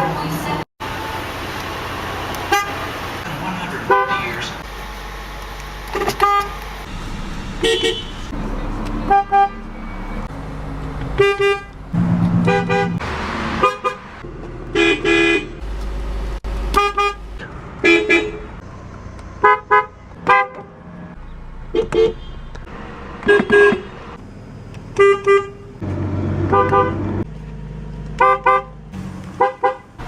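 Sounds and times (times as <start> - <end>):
car horn honks: 2.5 - 2.9, 3.8 - 4.5, 5.9 - 6.6, 7.6 - 8.4, 9.0 - 10.0, 11.2 - 11.8, 12.4 - 13.0, 13.6 - 14.0, 14.7 - 15.6, 16.7 - 17.2, 17.8 - 18.6, 19.4 - 20.8, 21.7 - 24.0, 25.0 - 25.7, 26.4 - 27.2, 28.2 - 28.8, 29.4 - 29.9.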